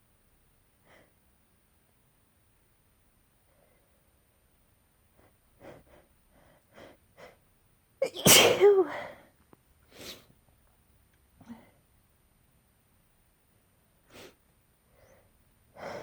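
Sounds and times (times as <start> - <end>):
person sneezing: 8.0 - 9.1
catching breaths: 14.1 - 16.0.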